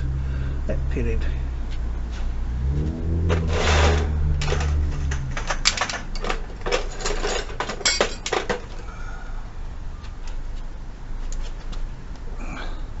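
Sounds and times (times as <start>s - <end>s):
metal hand tools clinking: 3.5s - 8.8s.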